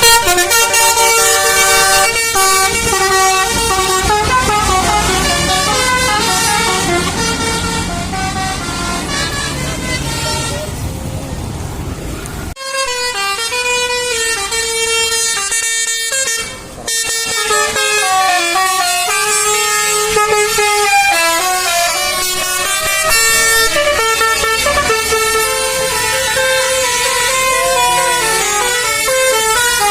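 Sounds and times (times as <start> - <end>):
multi-tone bus horn playing a tune: 0.0 - 11.0, 12.6 - 29.9.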